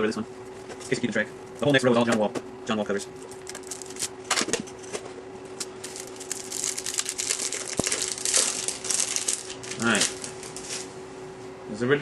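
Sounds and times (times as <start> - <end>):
faint steady hum: 0.0 - 12.0
plastic wrapper crinkling: 3.3 - 4.2, 5.6 - 10.9.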